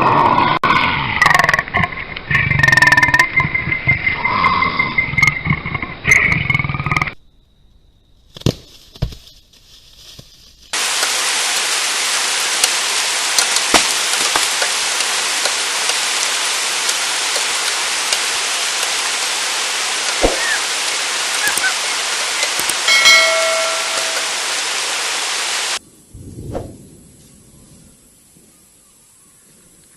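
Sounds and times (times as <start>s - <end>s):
loud steady hiss: 10.7s - 26.1s.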